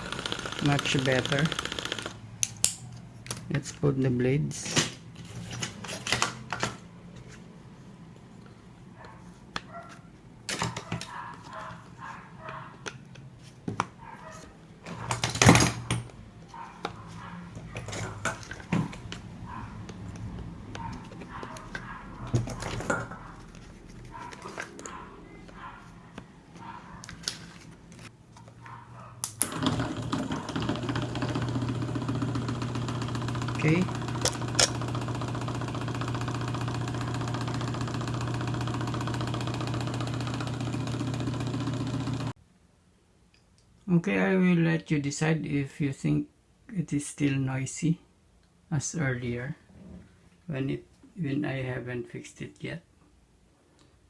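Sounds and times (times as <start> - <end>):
electric fan humming: 0.0 - 42.4.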